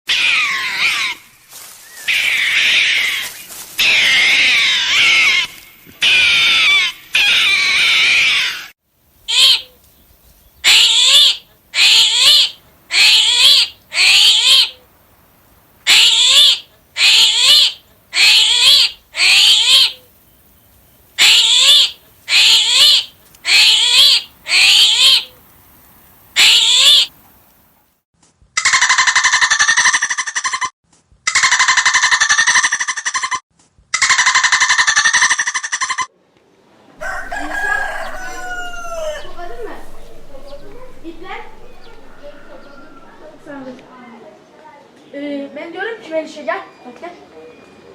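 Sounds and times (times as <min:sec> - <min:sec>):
animal short calls: 0:09.3 - 0:09.8, 0:10.6 - 0:14.8, 0:15.9 - 0:20.1, 0:21.2 - 0:25.3, 0:26.4 - 0:27.1
animal long wavering cries: 0:37.0 - 0:43.9.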